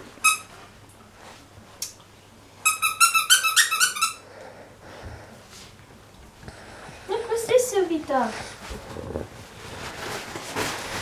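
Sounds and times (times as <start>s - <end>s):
squeaky dog toy squeaking: 0.2s - 0.5s, 2.6s - 4.2s.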